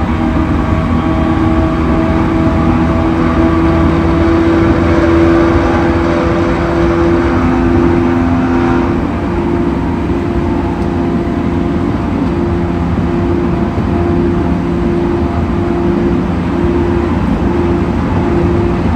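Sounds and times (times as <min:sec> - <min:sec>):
low hum: 0:00.0 - 0:18.9
steady droning hum: 0:00.0 - 0:18.9
train wheels rumbling on rail: 0:00.0 - 0:18.9.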